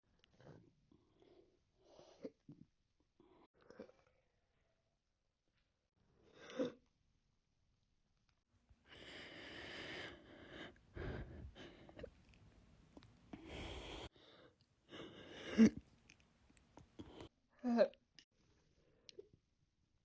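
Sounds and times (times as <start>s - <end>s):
woman breathing: 8.8s - 12.2s, 13.3s - 15.7s.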